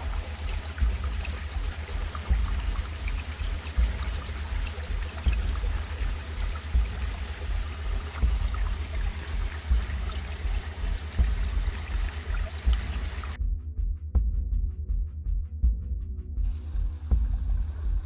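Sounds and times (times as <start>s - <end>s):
stream water rushing: 0.0s - 13.4s.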